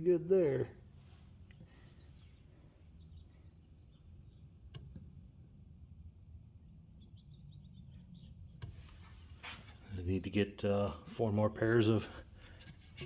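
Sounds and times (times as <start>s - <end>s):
faint bird chirps: 1.1s - 4.7s.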